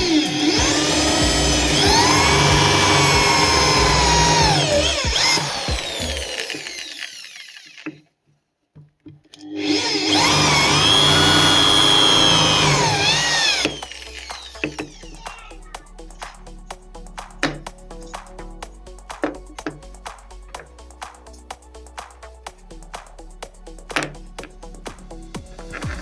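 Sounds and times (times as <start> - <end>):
power tool motor running: 0.0 - 8.0, 9.5 - 15.2.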